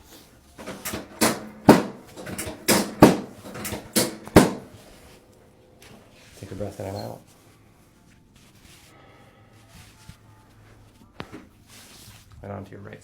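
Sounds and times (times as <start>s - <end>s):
sharp knocks or slaps: 0.6s - 4.8s.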